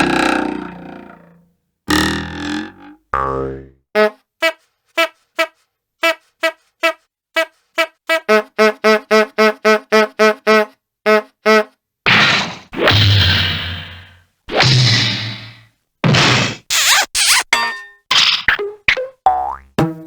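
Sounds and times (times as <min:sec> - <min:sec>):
brassy horn toots: 0:04.0 - 0:11.8.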